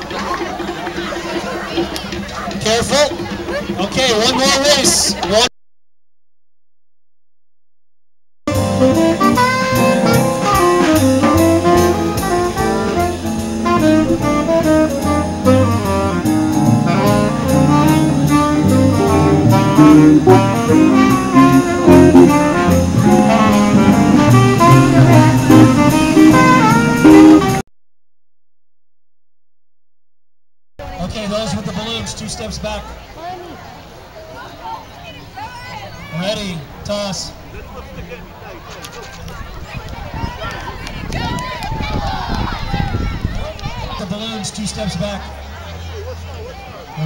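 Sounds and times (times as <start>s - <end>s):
jazz band with horns and drums: 0.0s - 5.5s, 8.5s - 27.6s.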